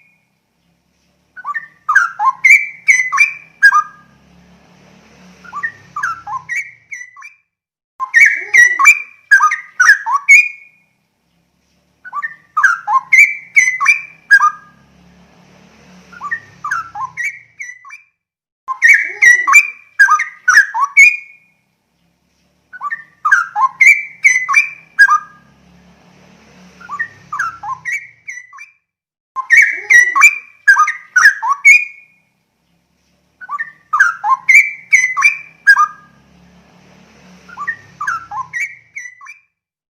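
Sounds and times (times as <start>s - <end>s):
bird singing bubbling whistles: 1.4s - 4.0s, 5.4s - 7.4s, 12.0s - 14.7s, 16.1s - 18.1s, 22.7s - 25.4s, 26.8s - 28.8s, 29.4s - 32.1s, 33.4s - 36.1s, 37.5s - 39.5s.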